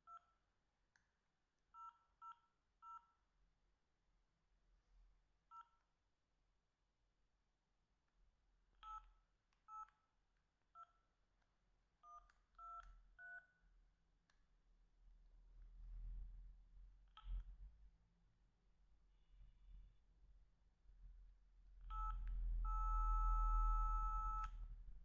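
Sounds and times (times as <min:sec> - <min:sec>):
phone keypad dual-tone beeps: 0:21.9 - 0:24.5.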